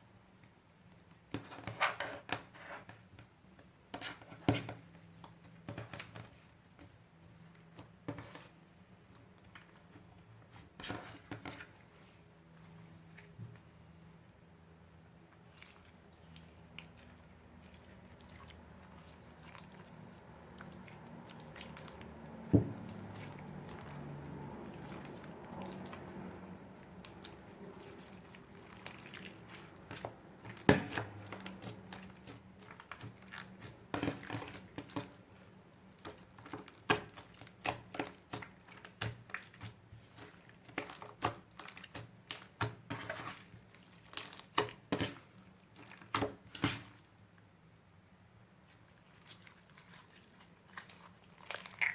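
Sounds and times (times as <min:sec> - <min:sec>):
slime squishing: 0:15.1 - 0:47.2, 0:48.6 - 0:51.9.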